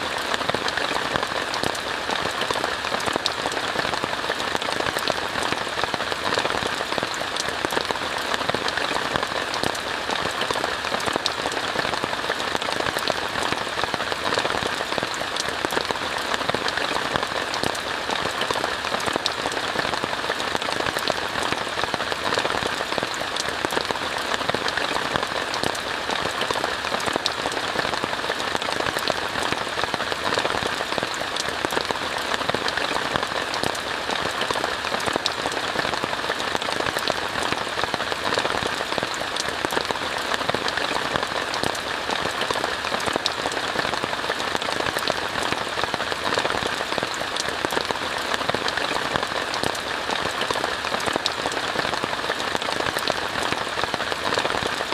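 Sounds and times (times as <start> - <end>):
rain falling on a tent: 0.0 - 54.9.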